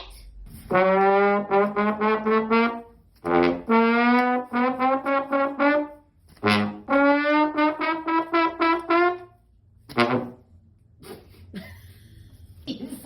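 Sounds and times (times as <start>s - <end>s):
trombone-like brass sound effect: 0.7s - 10.5s.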